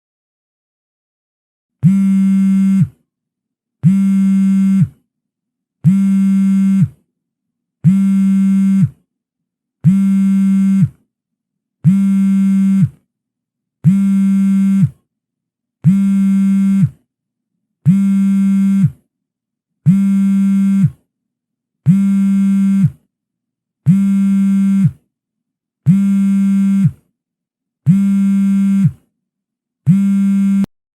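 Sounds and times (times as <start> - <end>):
mobile phone vibrating buzz: 1.8 - 3.0, 3.8 - 5.0, 5.8 - 7.0, 7.8 - 9.0, 9.8 - 11.0, 11.8 - 13.0, 13.8 - 15.0, 15.8 - 17.1, 17.8 - 19.0, 19.9 - 21.0, 21.9 - 23.0, 23.9 - 25.0, 25.9 - 27.1, 27.9 - 29.0, 29.9 - 30.7.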